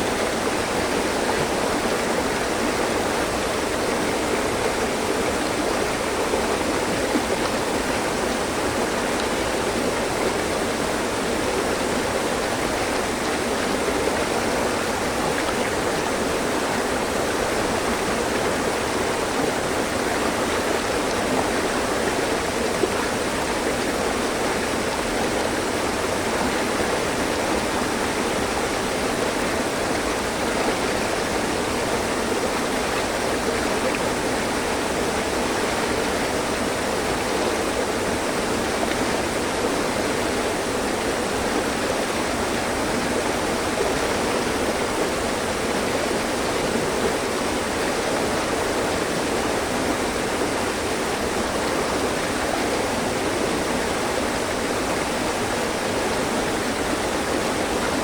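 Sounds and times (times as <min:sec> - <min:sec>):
stream running over rocks: 0:00.0 - 0:58.0.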